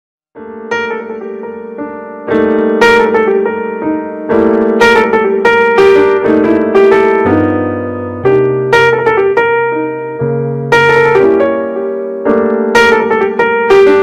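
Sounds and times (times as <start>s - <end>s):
piano background music: 0.4s - 14.0s.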